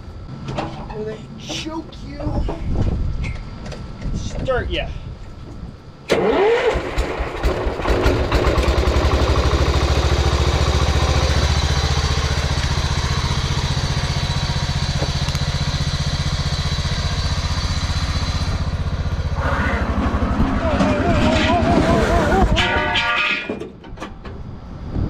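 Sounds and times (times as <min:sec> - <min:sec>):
mower engine starting and running: 0:06.1 - 0:22.8.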